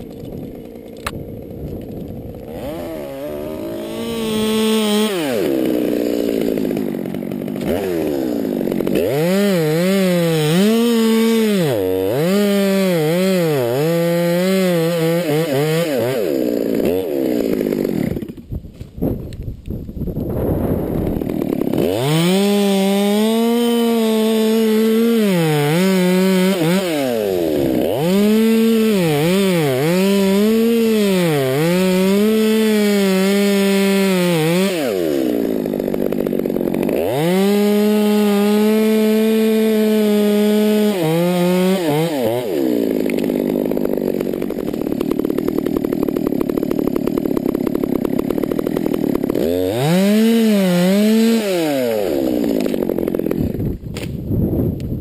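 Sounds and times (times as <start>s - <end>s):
chainsaw idling: 0.0s - 18.6s, 20.8s - 54.1s
chainsaw cutting wood: 0.0s - 55.0s.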